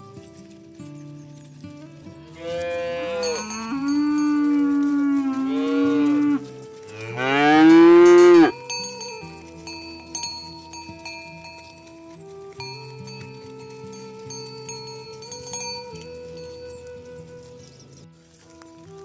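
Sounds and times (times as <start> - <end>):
cow mooing: 2.3 - 8.6.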